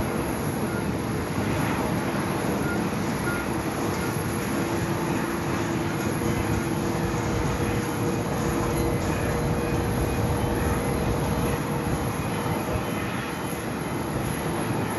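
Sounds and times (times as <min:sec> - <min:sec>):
jet engines rumbling: 0:00.0 - 0:14.9
thin high whine: 0:04.7 - 0:14.9.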